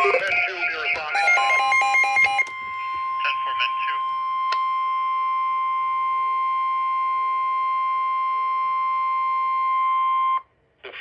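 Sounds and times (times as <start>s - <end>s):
steady alert tone: 1.2s - 2.7s.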